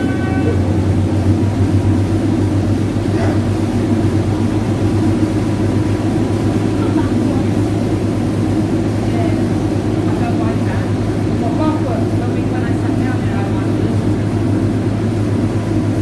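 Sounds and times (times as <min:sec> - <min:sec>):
boat engine droning: 0:00.0 - 0:16.0
faint voices: 0:03.0 - 0:03.6.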